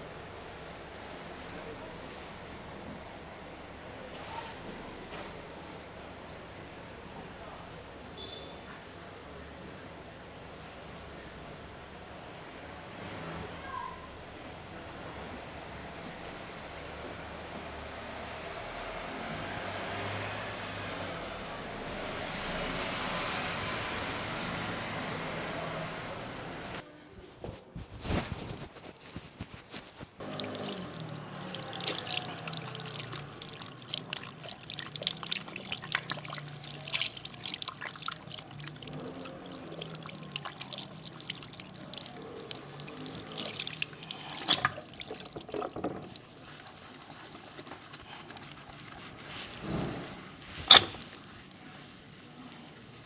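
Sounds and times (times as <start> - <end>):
water pouring and splashing: 30.2 - 51.6.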